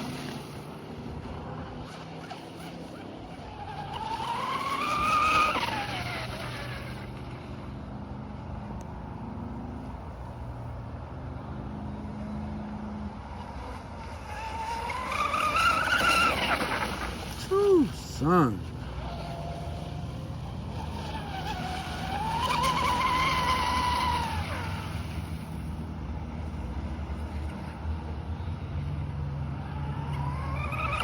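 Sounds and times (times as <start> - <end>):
rc boat motor whining past: 0.0 - 31.0.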